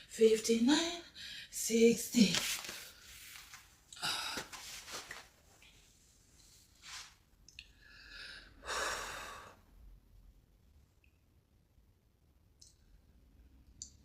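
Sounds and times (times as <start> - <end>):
woman breathing hard: 4.0 - 4.6, 7.8 - 9.6.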